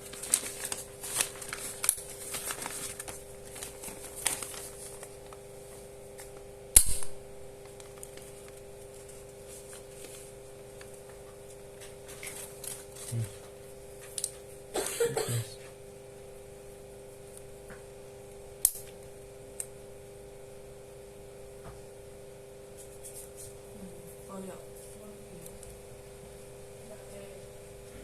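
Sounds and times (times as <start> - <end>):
plastic rustling: 0.0 - 5.8, 7.6 - 10.4
faint electrical hum: 0.0 - 28.0
loud sharp snap: 6.7 - 7.2.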